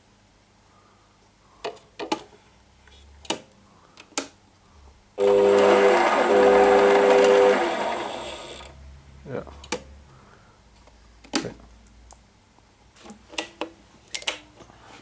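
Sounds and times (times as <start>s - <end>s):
lathe motor whining: 5.2s - 8.8s.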